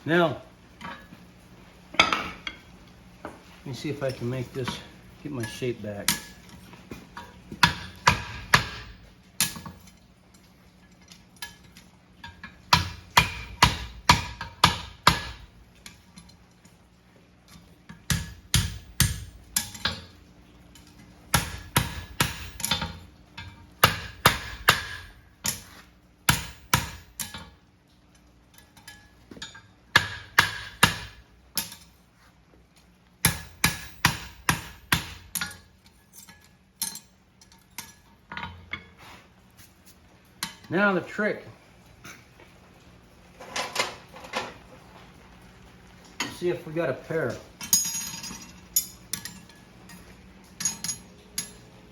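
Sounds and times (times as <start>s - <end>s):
hammer ringing on steel horseshoe: 47.6s - 50.0s, 50.6s - 51.7s.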